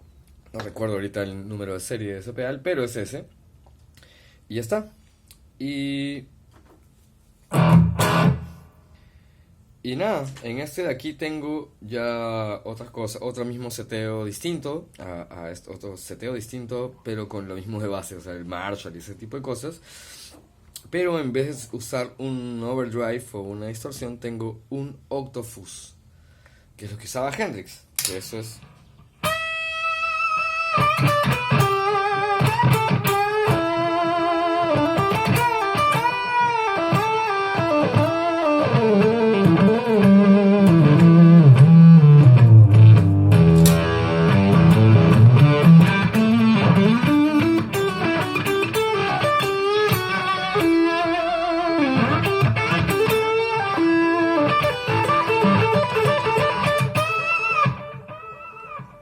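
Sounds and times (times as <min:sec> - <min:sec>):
fuzz electric guitar with vibrato: 0:07.5 - 0:09.0, 0:29.2 - 0:59.0.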